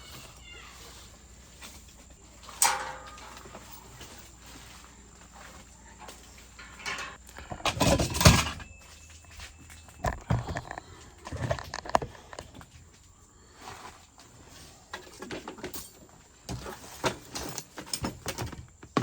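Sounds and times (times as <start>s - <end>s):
items knocking and clunking in box: 6.8s - 12.5s.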